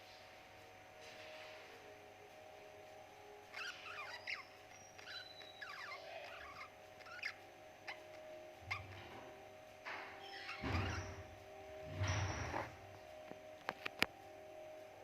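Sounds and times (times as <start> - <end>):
steady low hum: 0.0 - 15.0
budgerigars chirping: 3.5 - 9.3, 10.2 - 11.4.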